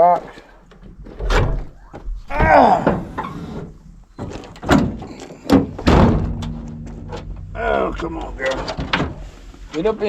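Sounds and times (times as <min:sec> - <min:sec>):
short vocal cry: 0:02.3 - 0:03.2.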